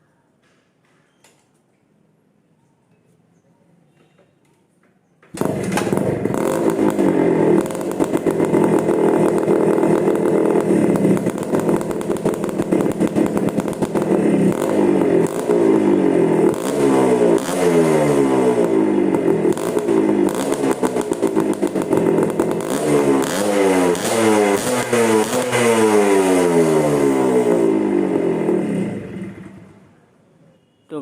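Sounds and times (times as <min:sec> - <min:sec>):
two-stroke motorcycle engine revving: 0:05.4 - 0:29.9.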